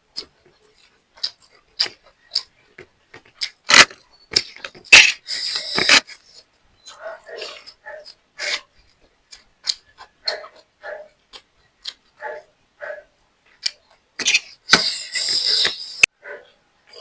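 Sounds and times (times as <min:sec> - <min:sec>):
chewing and lip-smacking: 0:00.5 - 0:03.6, 0:08.4 - 0:12.2.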